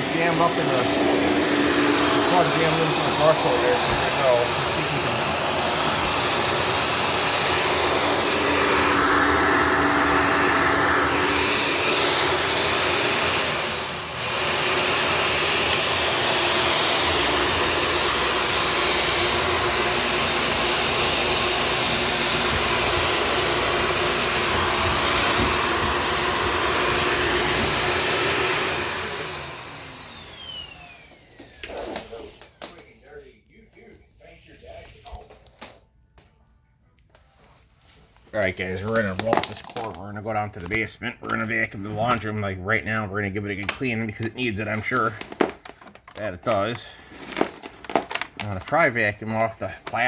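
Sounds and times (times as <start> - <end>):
vacuum cleaner motor whine: 0.0 - 32.9, 40.6 - 50.0.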